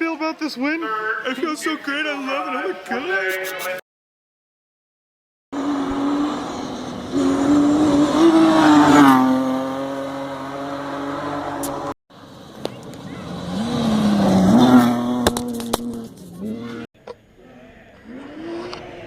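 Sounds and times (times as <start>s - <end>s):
rally car engine passing: 5.6s - 19.0s.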